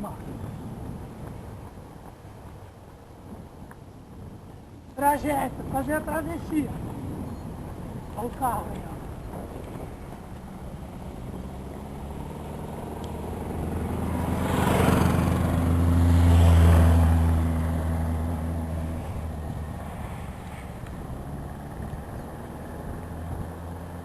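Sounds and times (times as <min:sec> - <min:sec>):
car driving past: 0:10.2 - 0:24.0.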